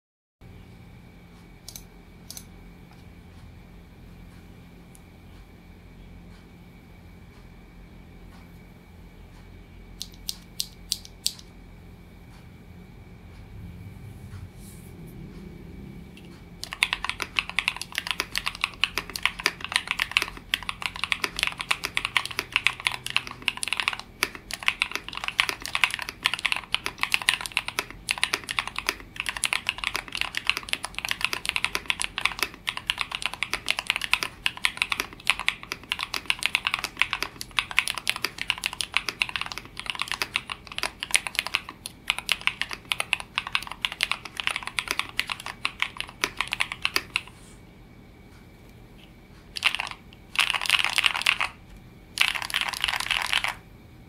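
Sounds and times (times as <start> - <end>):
fast typing on mechanical keyboard: 16.6 - 47.4, 49.5 - 51.6, 52.2 - 53.6.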